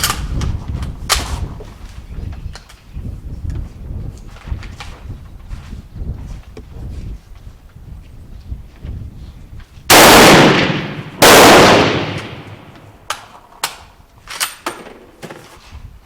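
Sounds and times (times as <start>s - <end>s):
rifle shots: 9.9s - 13.0s.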